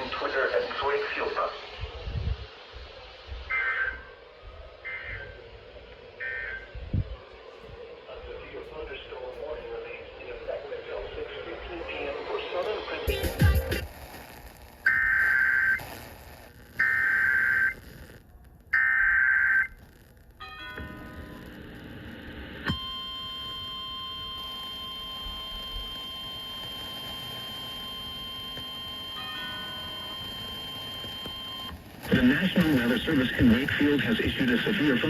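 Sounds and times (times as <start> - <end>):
shrill digital data warble: 3.4 - 7.0
buzzy two-tone data bursts: 22.7 - 35.0.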